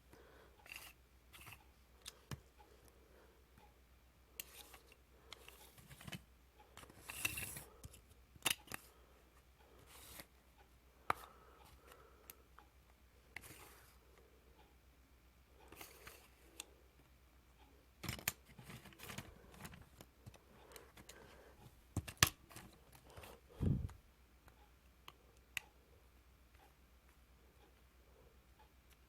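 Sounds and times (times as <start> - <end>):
scraping or snipping noises: 6.8 - 8.9.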